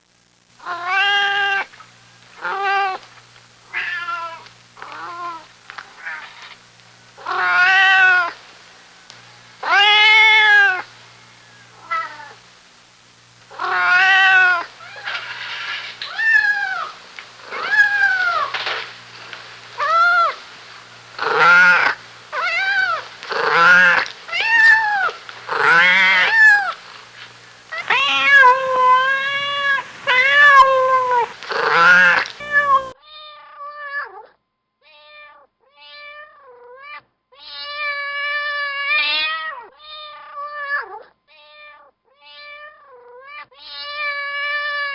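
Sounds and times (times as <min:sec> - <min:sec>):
cat meowing: 0:00.6 - 0:01.7, 0:03.7 - 0:06.4, 0:07.2 - 0:08.4, 0:09.6 - 0:10.9, 0:13.5 - 0:18.5, 0:19.8 - 0:20.4, 0:21.2 - 0:26.8, 0:27.7 - 0:44.9.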